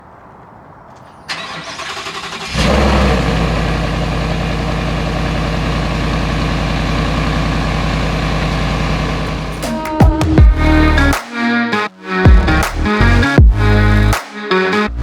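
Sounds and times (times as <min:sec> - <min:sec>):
engine revving and idling: 0:01.9 - 0:09.6.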